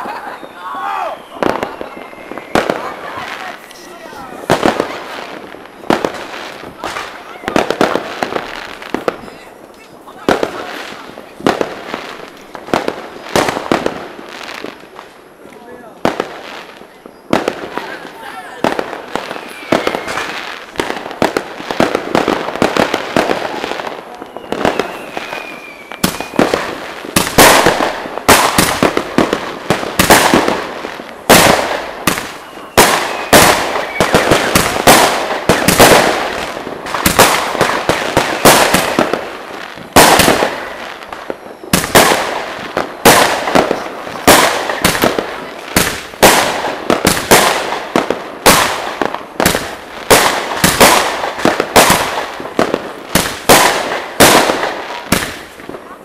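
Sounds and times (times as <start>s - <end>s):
fireworks crackling and banging: 0.0s - 56.0s
faint falling whistle: 0.2s - 2.9s, 19.3s - 20.4s, 24.2s - 26.5s, 32.4s - 34.3s.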